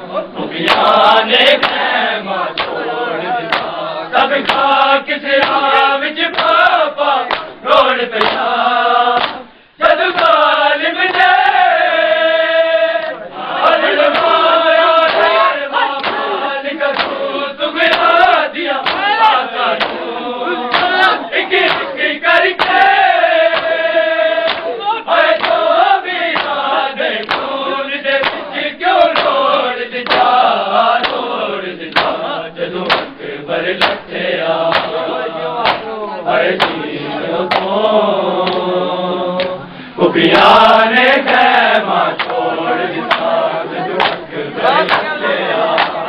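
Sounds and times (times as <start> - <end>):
men chanting in chorus: 0.0 - 46.0
sharp rhythmic chest strikes: 1.6 - 1.9, 2.6 - 3.8, 4.4 - 10.4, 14.0 - 38.8, 41.2 - 43.4, 44.0 - 46.0.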